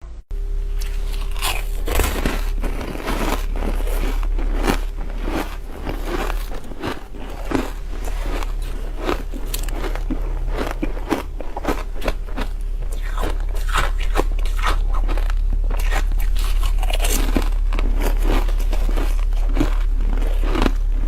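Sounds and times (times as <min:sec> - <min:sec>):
steady low hum: 0:00.0 - 0:21.0
ice being chewed: 0:00.7 - 0:21.0.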